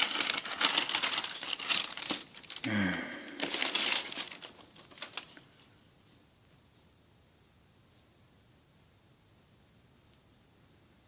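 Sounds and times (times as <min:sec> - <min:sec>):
wrapping paper crinkling: 0:00.0 - 0:05.6.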